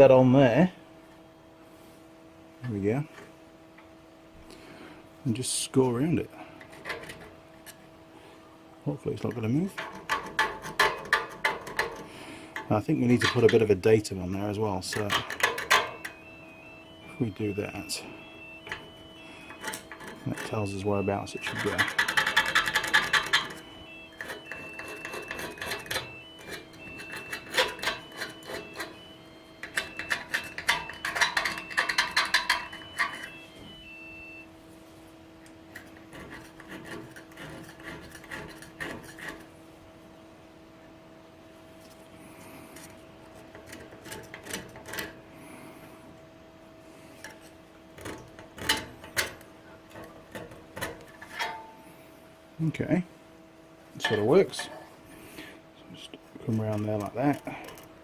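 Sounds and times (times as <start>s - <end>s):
steady workshop hum: 0.0s - 58.0s
scriber scratching steel plate: 9.8s - 12.1s, 19.5s - 33.3s, 35.7s - 39.5s
scriber scratching on steel plate: 35.8s - 39.5s.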